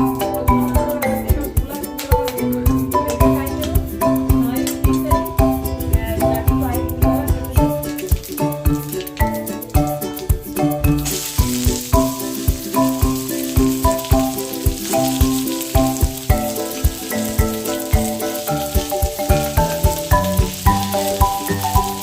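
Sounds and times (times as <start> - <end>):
background music with beat: 0.0 - 22.0
food sizzling in hot oil: 7.6 - 22.0.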